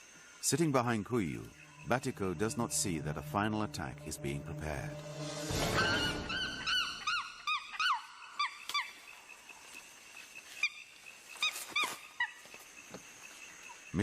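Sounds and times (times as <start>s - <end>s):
chimpanzees screaming: 5.5s - 8.9s.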